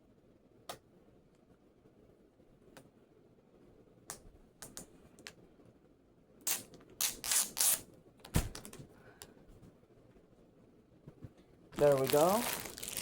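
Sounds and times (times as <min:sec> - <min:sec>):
plastic wrap crinkling: 0:11.8 - 0:13.0.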